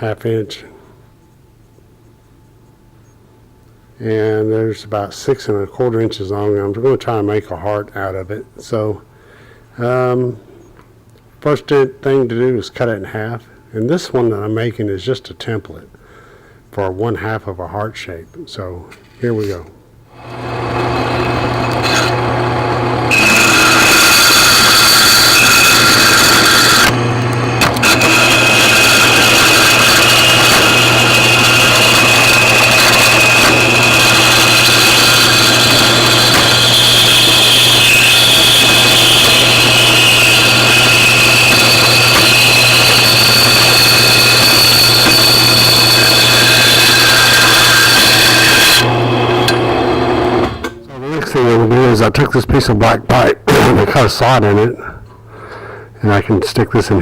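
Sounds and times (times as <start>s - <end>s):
power tool motor running: 20.2s - 50.8s
tool cutting steel bar: 20.2s - 50.8s.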